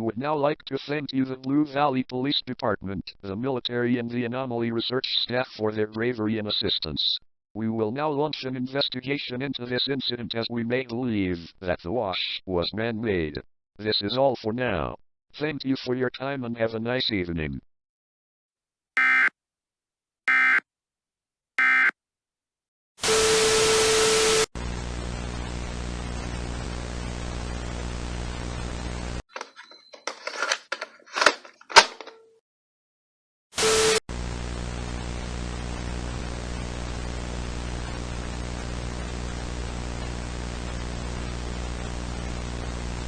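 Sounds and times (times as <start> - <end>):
squawking data bursts: 19.0 - 19.3, 20.3 - 20.6, 21.6 - 21.9.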